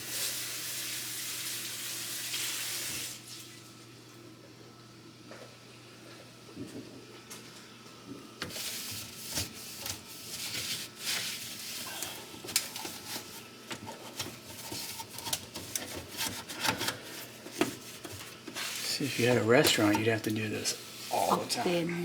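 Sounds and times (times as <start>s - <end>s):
scrubbing greasy metal parts: 8.5s - 21.8s.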